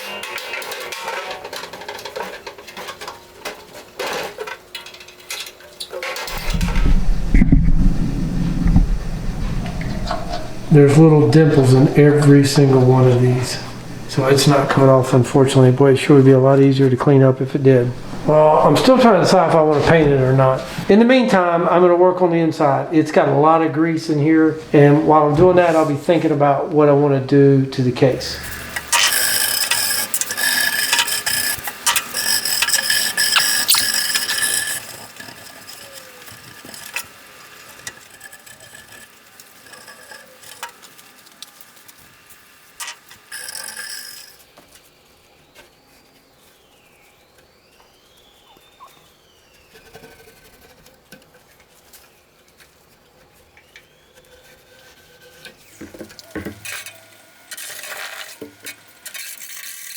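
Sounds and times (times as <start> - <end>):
scraping: 5.9 - 16.2, 28.0 - 44.6
scrubbing metal chest: 6.2 - 15.6
faint squeaks: 6.2 - 15.7.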